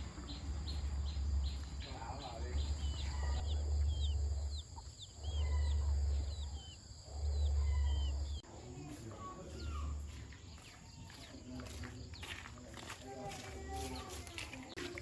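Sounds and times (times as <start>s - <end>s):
surging low rumble: 0.0s - 8.8s
small birds chirping: 0.0s - 15.0s.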